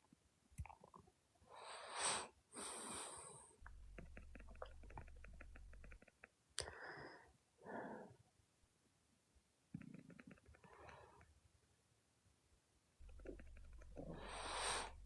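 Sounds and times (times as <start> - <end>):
stomach gurgling: 0.6 - 1.2, 3.6 - 6.1, 13.0 - 15.0
man breathing close: 14.1 - 15.0.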